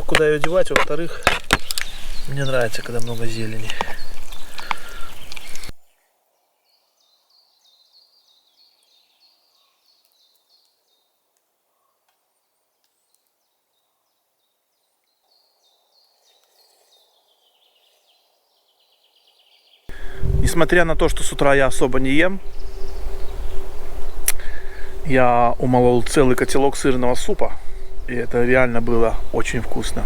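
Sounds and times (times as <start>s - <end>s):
bird chirping: 0.0s - 30.0s
quiet forest ambience: 0.0s - 30.0s
noisy burst: 19.9s - 30.0s.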